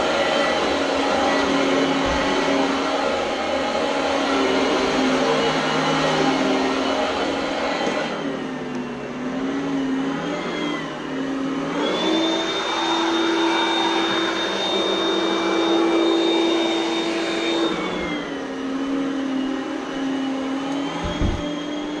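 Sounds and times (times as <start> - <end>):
vacuum cleaner motor whine: 0.0 - 22.0
brief low thump: 21.0 - 21.4.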